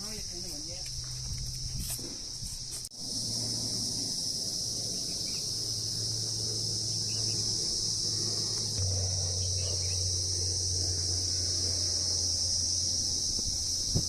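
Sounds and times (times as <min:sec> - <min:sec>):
insects chirring: 0:00.0 - 0:14.0
steady low hum: 0:00.0 - 0:14.0
faint bird chirps: 0:08.1 - 0:11.3.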